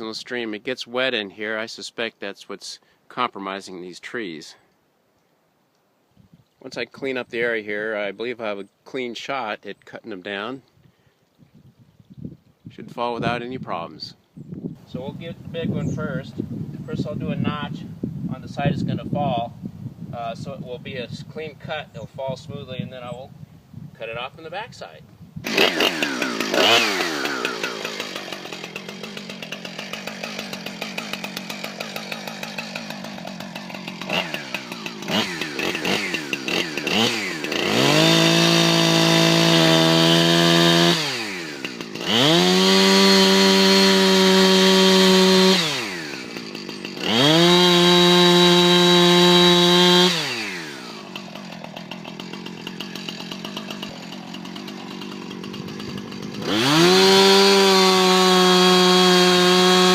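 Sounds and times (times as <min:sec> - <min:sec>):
chainsaw cutting wood: 0:25.4 - 0:59.9
chainsaw idling and revving: 0:25.4 - 0:59.9.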